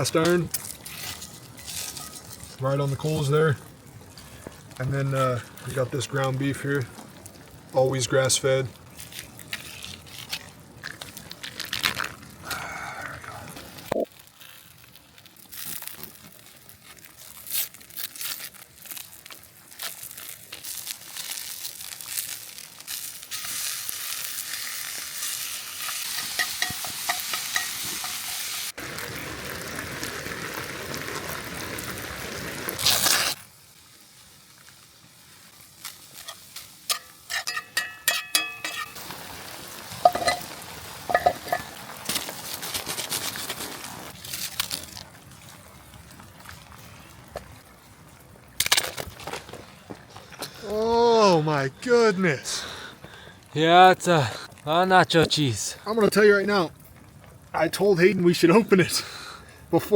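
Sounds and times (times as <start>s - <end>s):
meat sizzling in a skillet: 18.8s - 45.0s
utensil stirring and scraping: 36.2s - 39.0s.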